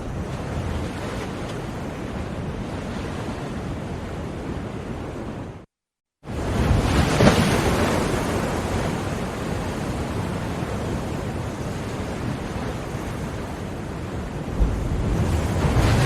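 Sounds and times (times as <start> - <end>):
ocean surf washing: 6.3 - 16.0.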